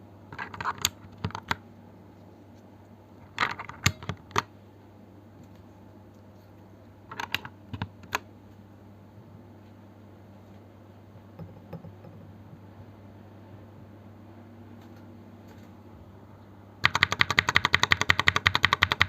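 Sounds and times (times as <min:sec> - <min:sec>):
mechanical keyboard typing: 0:07.1 - 0:08.2, 0:16.8 - 0:19.0.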